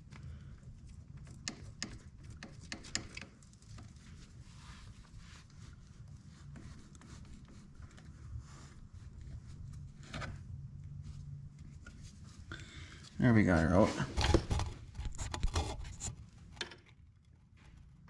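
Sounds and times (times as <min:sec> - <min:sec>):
faint low hum: 0:03.3 - 0:18.0.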